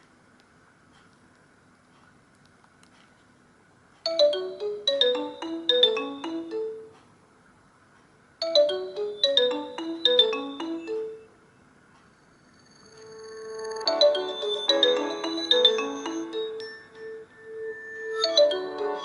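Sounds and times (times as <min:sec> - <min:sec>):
phone ringtone melody: 0:04.1 - 0:07.0, 0:08.4 - 0:11.4, 0:12.7 - 0:19.0.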